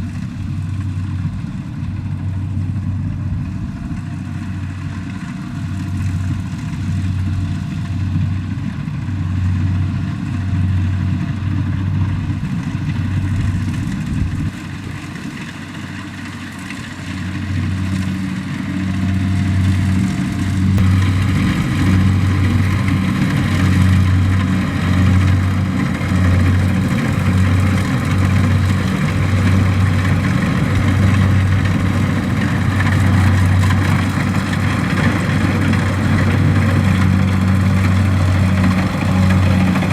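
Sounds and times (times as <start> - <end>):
combine harvester engine running: 0.0 - 39.9
machinery clatter: 10.1 - 39.9.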